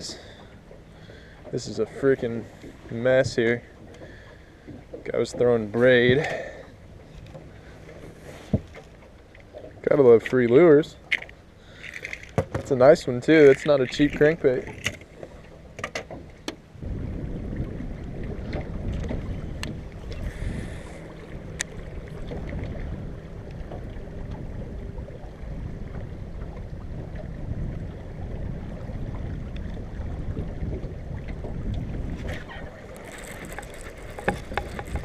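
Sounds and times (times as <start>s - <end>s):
boat engine rumble: 0.0s - 35.0s
wind on microphone: 16.7s - 35.0s
light clicks and taps: 33.0s - 35.0s.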